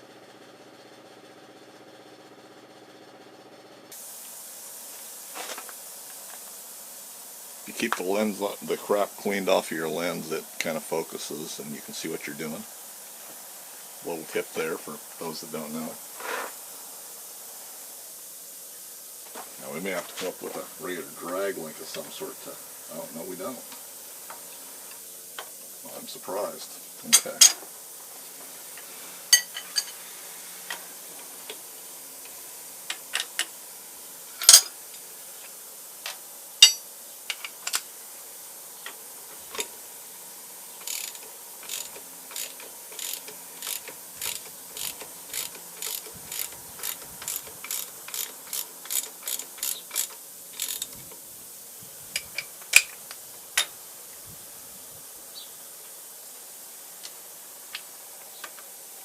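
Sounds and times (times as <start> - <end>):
ratchet clicking: 40.8 - 51.1.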